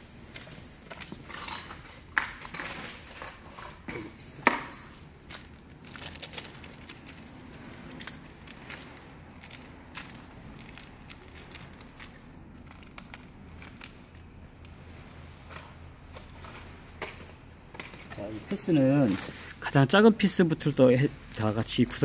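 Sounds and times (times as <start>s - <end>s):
packaging crinkling: 5.0s - 14.7s.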